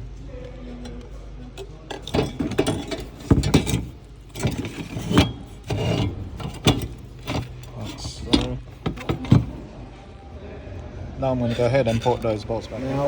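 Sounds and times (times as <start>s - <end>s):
fuel filter clicking and rattling: 0.8s - 9.6s.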